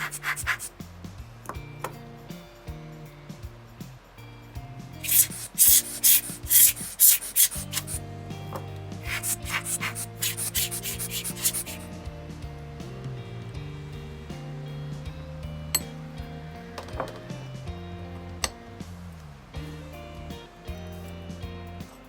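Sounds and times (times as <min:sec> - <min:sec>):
quick rubbing strokes: 0:00.0 - 0:00.7, 0:05.0 - 0:08.0, 0:09.0 - 0:11.9
background music: 0:00.0 - 0:22.0.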